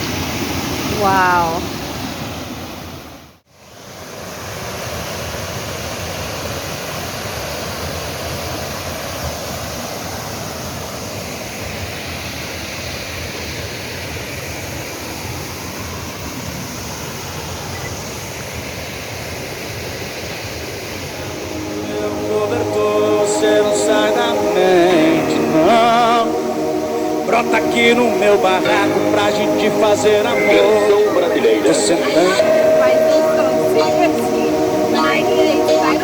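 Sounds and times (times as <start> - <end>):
waterfall rushing: 20.6 - 36.0.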